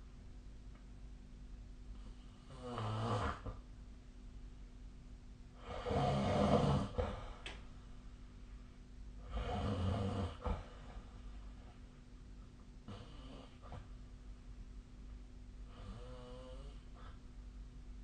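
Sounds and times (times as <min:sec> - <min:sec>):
person snoring: 0:02.4 - 0:03.5, 0:05.6 - 0:07.4, 0:09.2 - 0:10.7, 0:15.7 - 0:17.1.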